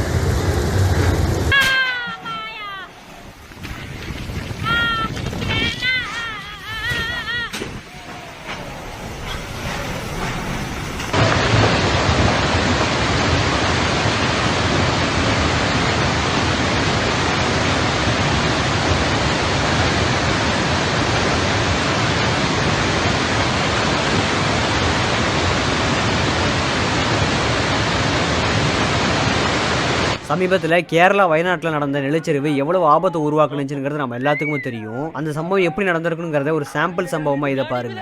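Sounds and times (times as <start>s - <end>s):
loud steady rushing noise: 0.0s - 1.5s, 7.5s - 30.8s.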